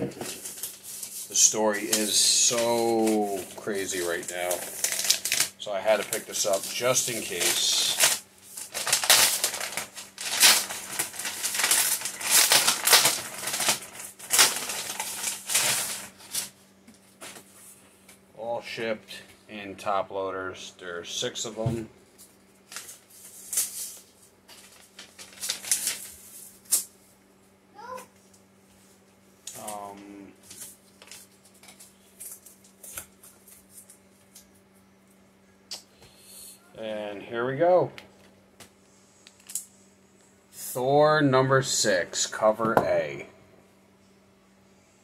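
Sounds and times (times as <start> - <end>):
steady low hum: 0.0 - 45.0
packaging crinkling and rustling: 0.1 - 17.5, 22.3 - 26.9, 30.4 - 34.5
plastic sleeves clicking and rustling: 4.0 - 16.5.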